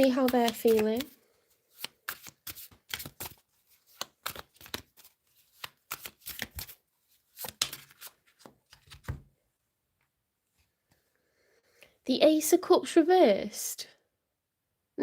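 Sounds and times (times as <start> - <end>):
cards being shuffled: 0.0 - 9.3.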